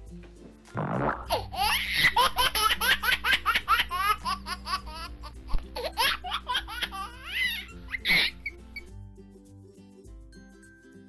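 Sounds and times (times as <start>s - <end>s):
background music: 0.0s - 11.0s
child giggling: 5.8s - 8.5s.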